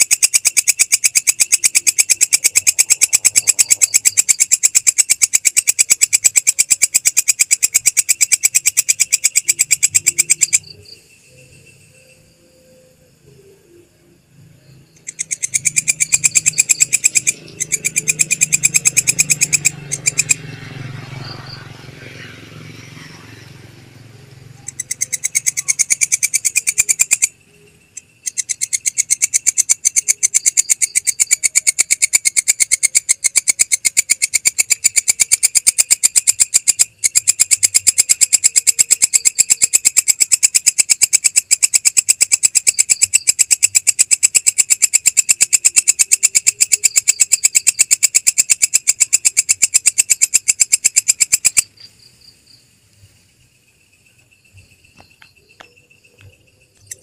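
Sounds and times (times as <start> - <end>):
katydid stridulating: 0.0 - 57.0.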